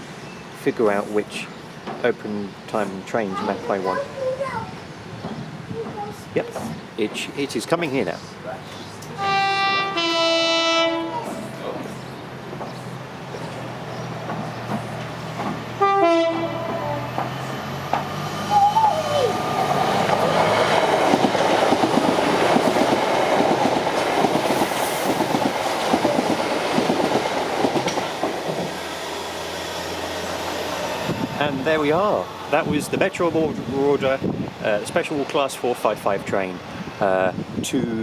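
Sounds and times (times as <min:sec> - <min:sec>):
train horn blast: 0:09.2 - 0:11.4, 0:15.8 - 0:17.0
train wheels clicking over track: 0:12.5 - 0:18.4, 0:19.6 - 0:32.1.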